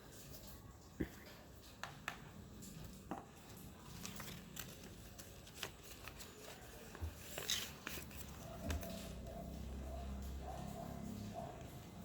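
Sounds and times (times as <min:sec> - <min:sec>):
paper crinkling and rustling: 0:02.6 - 0:09.8.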